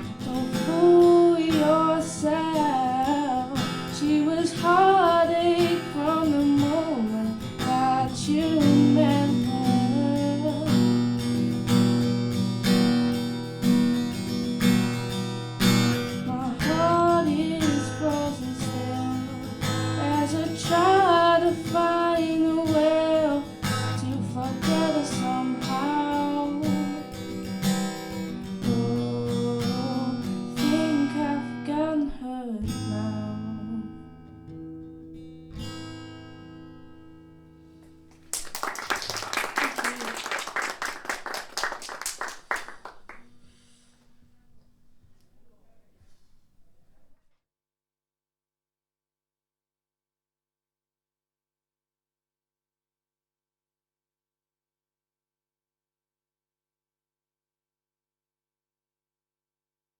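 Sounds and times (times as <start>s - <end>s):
acoustic guitar strumming: 0.0s - 31.8s, 32.7s - 38.1s.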